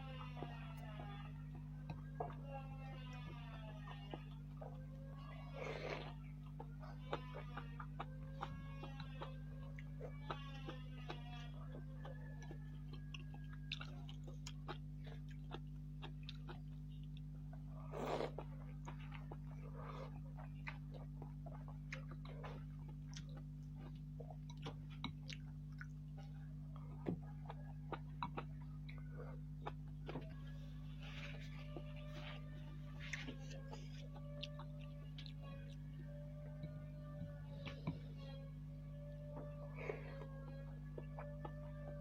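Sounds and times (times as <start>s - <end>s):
wet chewing mouth clicks: 5.7s - 32.4s.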